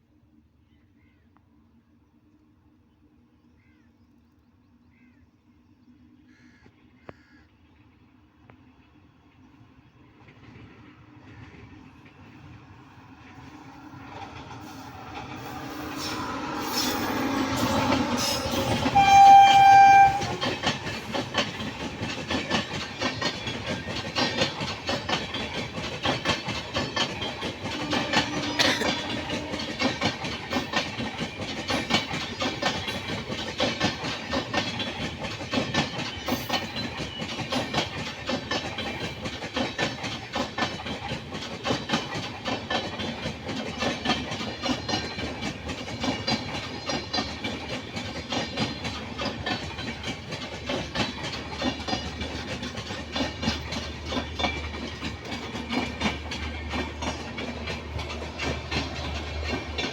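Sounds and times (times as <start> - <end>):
train wheels clickety-clack: 8.5 - 59.9
train horn blast: 15.8 - 20.7, 27.7 - 29.8.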